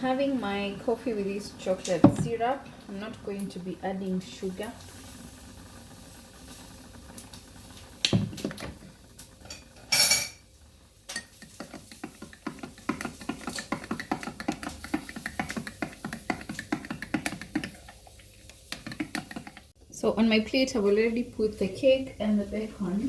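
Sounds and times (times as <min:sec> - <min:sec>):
cup set down knock: 0:02.0 - 0:02.4
spoon clinking in a mug: 0:09.5 - 0:10.4, 0:11.1 - 0:11.5.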